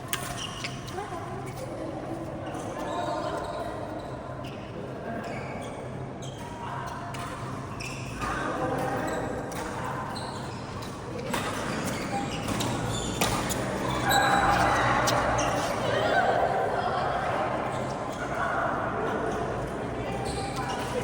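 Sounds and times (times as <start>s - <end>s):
shoes squeaking on court floor: 0.0s - 1.8s, 2.4s - 16.0s, 19.1s - 21.0s
rackets hitting shuttlecock: 12.5s - 13.8s.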